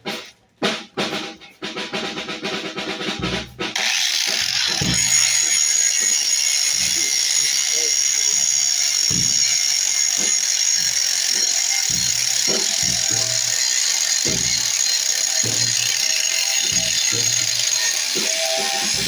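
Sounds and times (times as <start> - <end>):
angle grinder cutting metal: 3.8 - 19.0.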